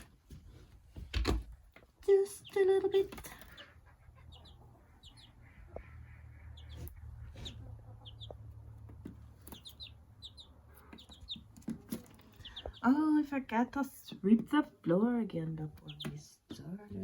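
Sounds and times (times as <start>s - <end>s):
chick cheeping: 2.3s - 8.6s, 9.4s - 12.9s.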